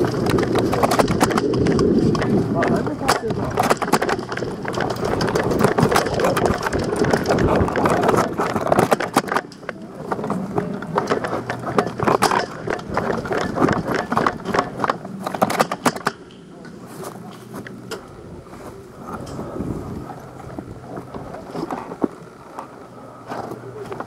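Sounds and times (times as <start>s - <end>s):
footsteps crunching on dry ground: 16.2s - 24.0s.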